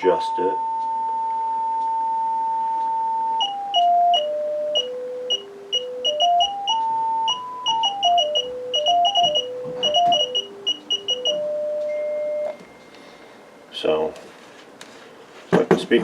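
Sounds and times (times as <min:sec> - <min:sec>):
speaker test tone stepping in pitch: 0:00.0 - 0:12.6.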